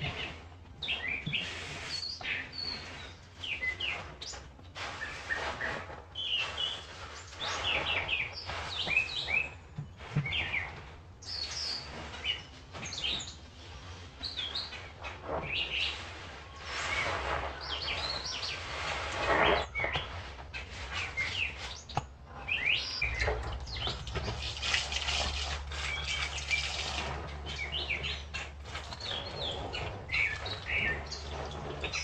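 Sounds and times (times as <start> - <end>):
small birds chirping: 0.0 - 4.4, 5.0 - 32.0
water splashing from sponge: 23.0 - 31.6.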